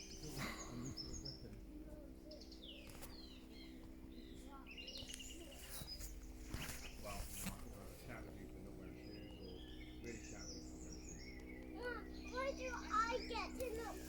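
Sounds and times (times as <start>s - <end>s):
small birds chirping: 0.0s - 14.0s
steady low hum: 0.0s - 14.0s
faint clicks: 11.4s - 11.8s, 13.5s - 13.8s.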